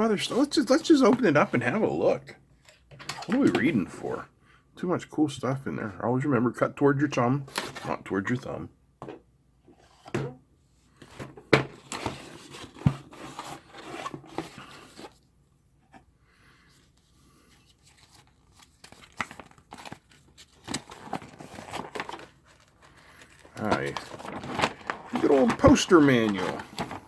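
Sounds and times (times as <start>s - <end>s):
cardboard and packaging rustling: 0.1s - 1.9s, 7.4s - 8.0s, 11.0s - 15.3s, 16.8s - 27.0s.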